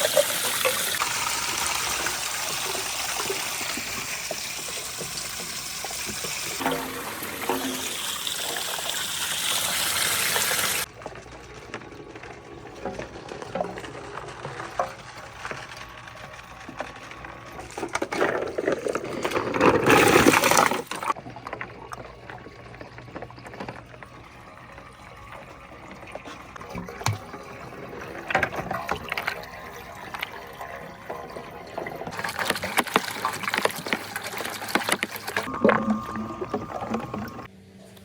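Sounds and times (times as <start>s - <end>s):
running water: 0.0s - 37.5s
marbles rolling down wooden run: 9.6s - 24.9s.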